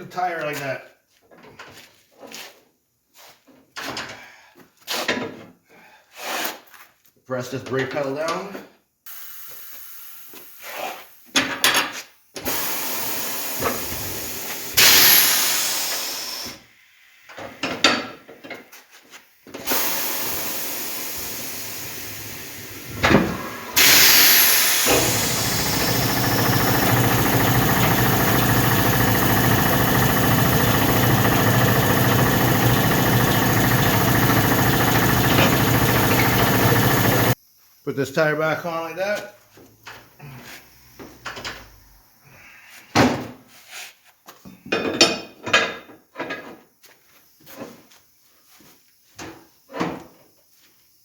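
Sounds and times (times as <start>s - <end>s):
compressed air hissing: 12.6s - 16.6s, 19.7s - 37.4s
electric motor humming: 19.7s - 37.4s.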